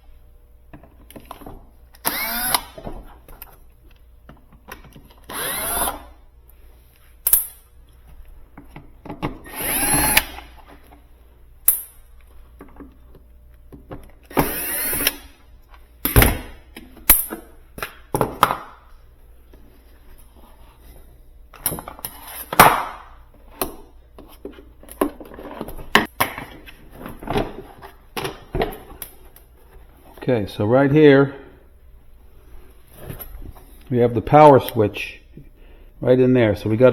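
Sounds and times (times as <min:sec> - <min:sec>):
cordless screwdriver running: 0:02.0 - 0:02.8, 0:05.3 - 0:06.1, 0:09.5 - 0:10.4, 0:14.3 - 0:15.2.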